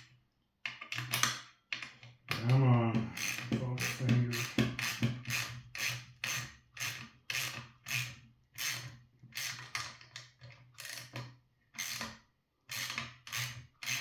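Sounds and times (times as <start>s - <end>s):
ratchet wrench clicking: 3.2s - 9.6s, 11.8s - 12.0s, 12.7s - 14.0s.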